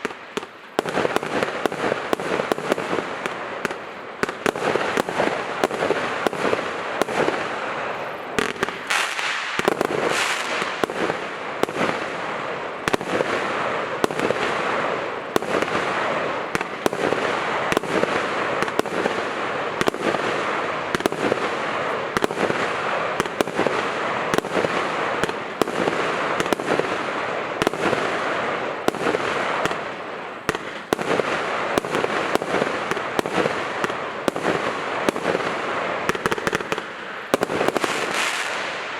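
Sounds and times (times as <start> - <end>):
firework bangs: 0.0 - 38.9
firework hissing crackle: 0.0 - 38.9.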